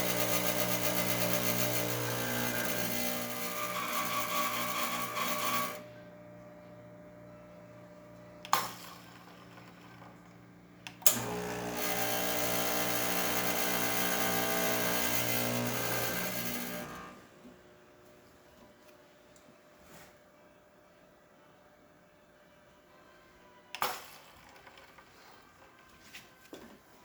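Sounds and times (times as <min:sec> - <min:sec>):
espresso machine pump humming: 0:00.0 - 0:05.9, 0:11.0 - 0:17.3.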